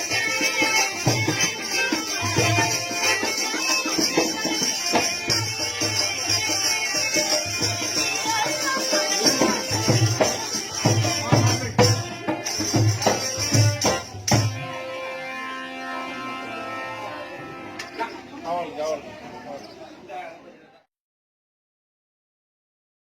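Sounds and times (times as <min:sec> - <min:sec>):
hand drum beat: 0:00.0 - 0:14.6
folk music: 0:00.0 - 0:19.4.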